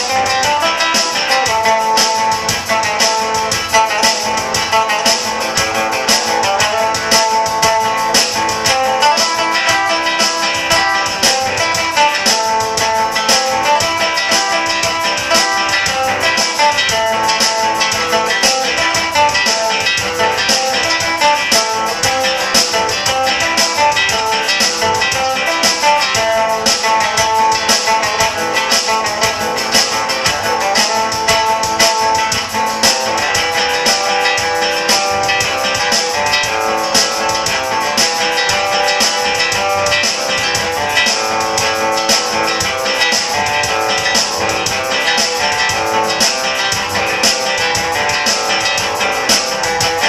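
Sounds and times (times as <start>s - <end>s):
plucked string music over beat: 0.0s - 50.0s.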